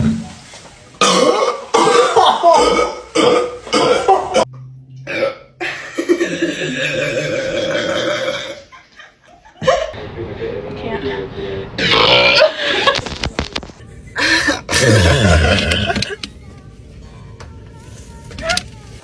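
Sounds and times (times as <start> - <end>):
person burping: 1.0 - 5.6, 6.2 - 8.7, 11.8 - 13.0, 14.6 - 16.1.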